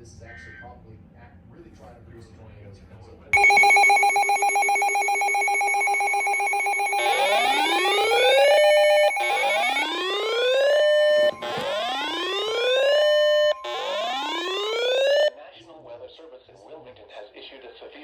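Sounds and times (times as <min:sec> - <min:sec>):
buzzing alarm tone: 0:03.4 - 0:15.3
rising whoop siren sweeps: 0:07.0 - 0:15.3.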